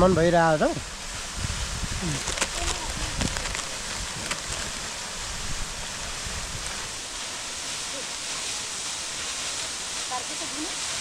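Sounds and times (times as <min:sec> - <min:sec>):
waterfall hiss: 0:00.0 - 0:11.0.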